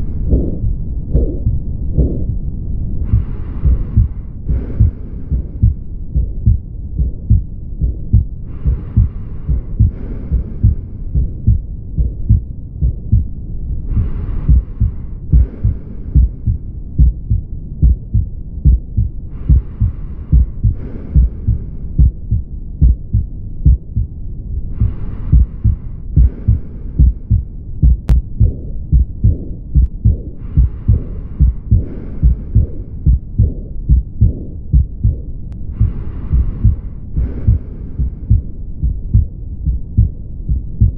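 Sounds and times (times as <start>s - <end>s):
heart murmur hiss: 0.0s - 2.4s, 3.0s - 40.9s
heartbeats: 0.0s - 40.9s.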